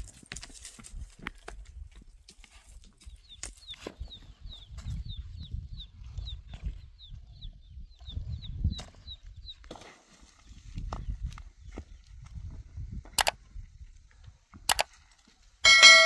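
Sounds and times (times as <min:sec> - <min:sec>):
bird chirping high notes: 0:15.7 - 0:16.0.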